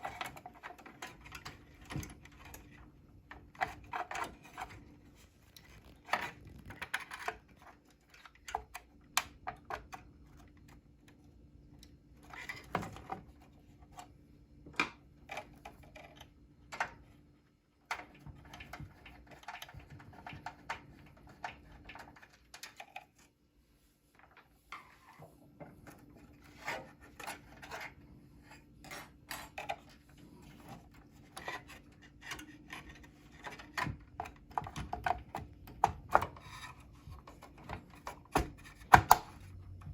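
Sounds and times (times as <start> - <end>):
plastic and metal parts clicking: 28.9 - 39.9.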